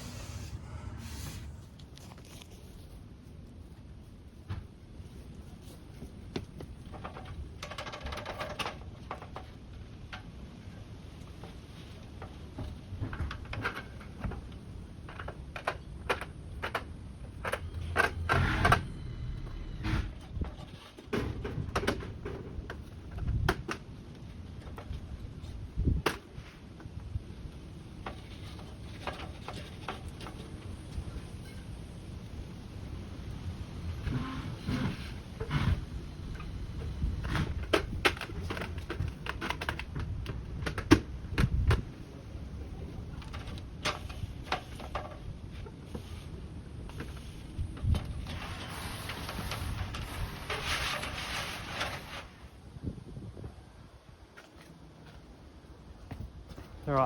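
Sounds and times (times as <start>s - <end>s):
scraping: 48.2s - 52.5s.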